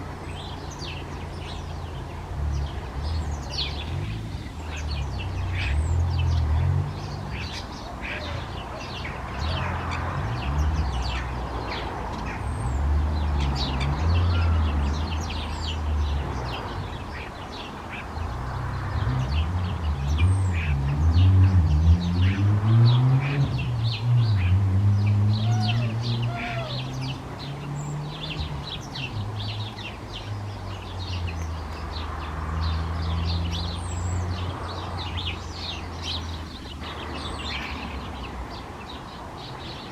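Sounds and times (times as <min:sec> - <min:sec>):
sparrows chirping: 0:00.0 - 0:39.9.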